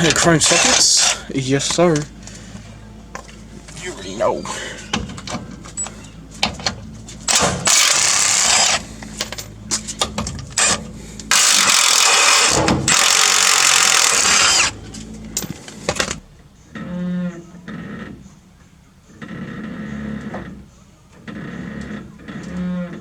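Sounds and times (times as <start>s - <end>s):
power tool undoing bolts: 0.0s - 2.2s, 4.6s - 16.2s.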